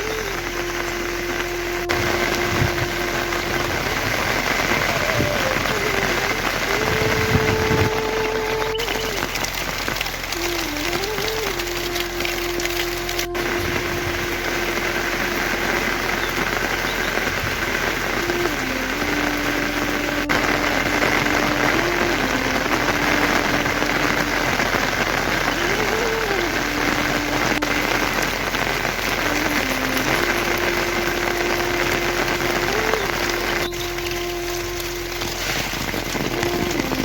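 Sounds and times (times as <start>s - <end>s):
heavy rain: 0.0s - 37.0s
slow melody of held notes: 0.0s - 37.0s.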